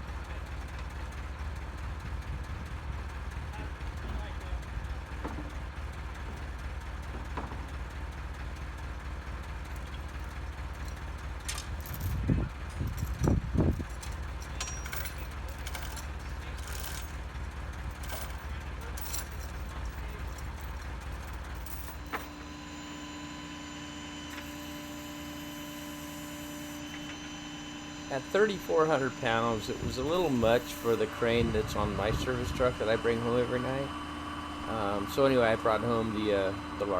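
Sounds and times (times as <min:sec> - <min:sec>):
engine idling low rumble: 0:00.0 - 0:23.0, 0:26.8 - 0:36.9
steady machine hum: 0:10.1 - 0:36.9.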